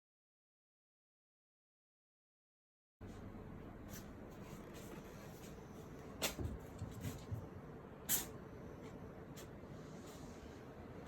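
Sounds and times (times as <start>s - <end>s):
faint room hum: 3.0s - 11.0s
cats scuffling: 3.9s - 7.6s.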